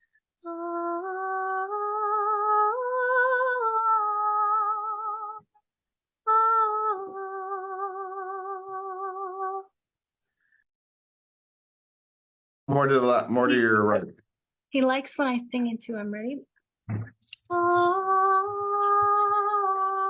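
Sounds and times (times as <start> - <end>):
woman singing wordless notes: 0.4 - 5.4, 6.3 - 9.7, 17.4 - 20.0.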